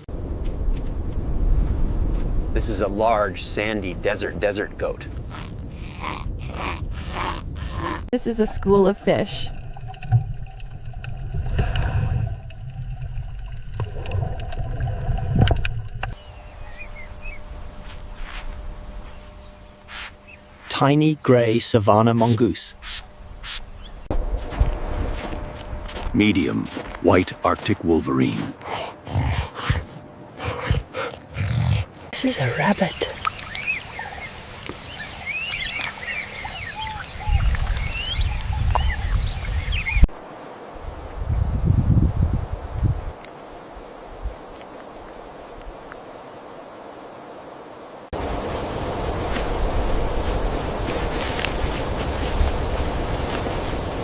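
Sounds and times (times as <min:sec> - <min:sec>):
wind rumble on microphone: 0:00.0 - 0:19.6, 0:35.3 - 0:40.1, 0:40.8 - 0:44.6, 0:48.2 - 0:54.0
low underwater rumble: 0:09.0 - 0:17.8
underwater clicks: 0:09.5 - 0:16.2
birds chirping and whistling: 0:16.1 - 0:18.4, 0:22.8 - 0:24.1, 0:32.6 - 0:40.1.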